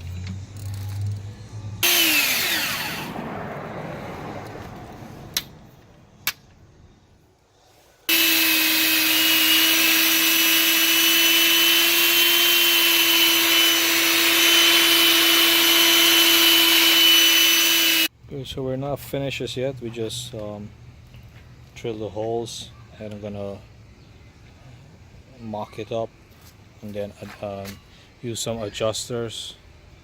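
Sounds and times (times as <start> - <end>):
core drill motor whining: 1.8 - 3.1, 8.1 - 18.1.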